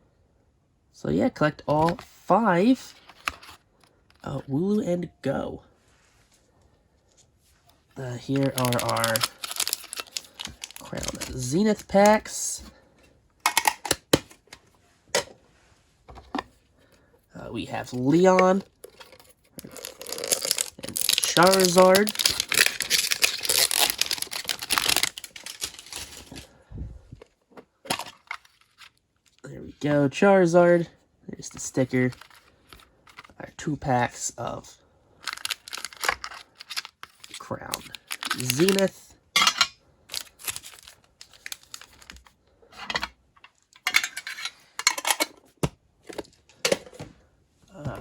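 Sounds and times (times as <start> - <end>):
plastic packaging crinkling: 8.1 - 12.3, 18.1 - 26.6, 35.2 - 39.0, 40.1 - 42.4.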